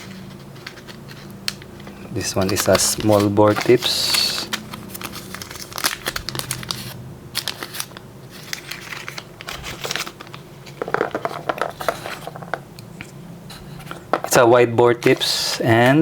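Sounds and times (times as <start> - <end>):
plastic packaging rustling: 0.0 - 12.7.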